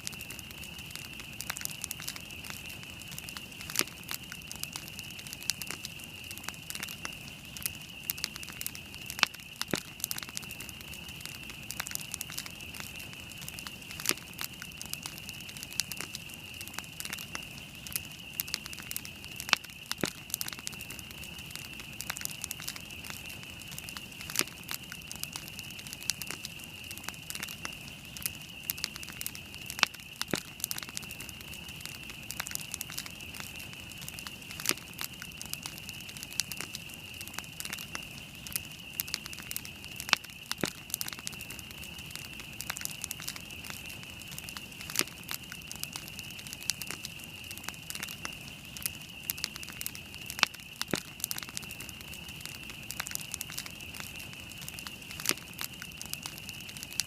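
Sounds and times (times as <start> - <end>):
campfire crackling and popping: 0.0 - 57.0.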